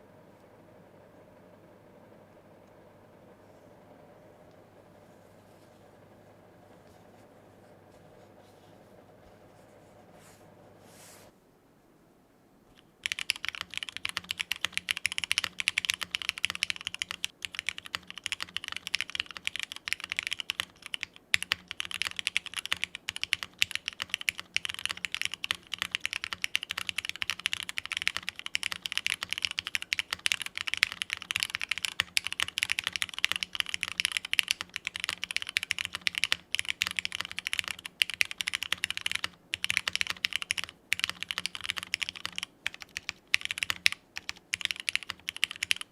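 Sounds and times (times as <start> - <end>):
fast mechanical keyboard typing: 12.8 - 45.9.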